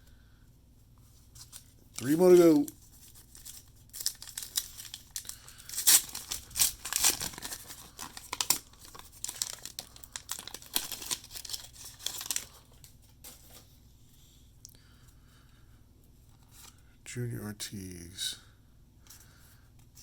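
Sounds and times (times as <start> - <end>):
wrapper tearing and crinkling: 1.4 - 12.7.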